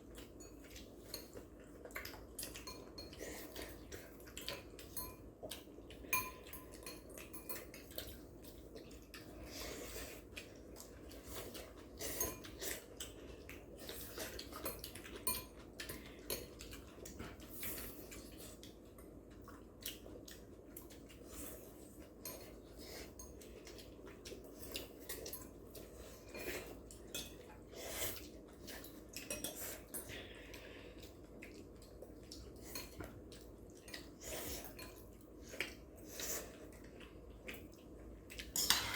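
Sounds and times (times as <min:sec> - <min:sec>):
cutlery clinking against bowls: 0:00.1 - 0:08.2, 0:10.8 - 0:18.3, 0:22.0 - 0:30.6, 0:32.6 - 0:33.2, 0:38.4 - 0:38.9.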